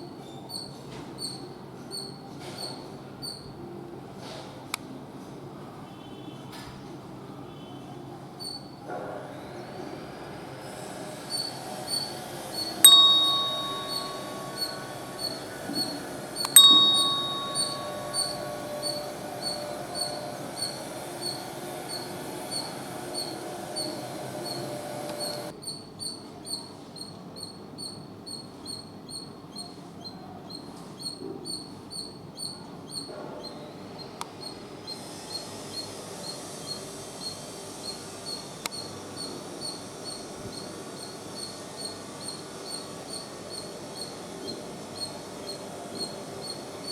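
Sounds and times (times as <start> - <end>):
squirrel chirping: 11.3 - 33.6
loud ringing tones: 12.6 - 25.5.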